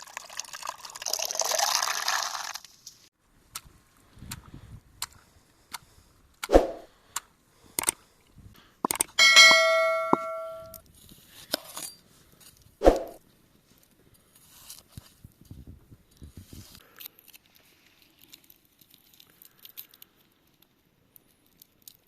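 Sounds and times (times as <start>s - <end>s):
metal vessel struck ringing: 9.2s - 10.8s.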